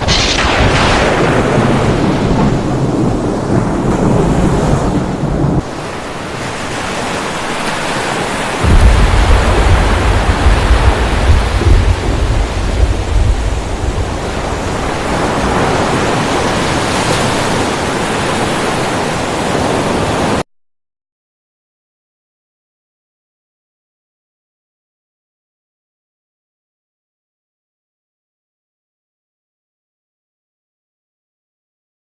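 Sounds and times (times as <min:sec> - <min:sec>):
surf and wind roaring: 0:00.0 - 0:20.4
deep rumble: 0:08.6 - 0:15.0.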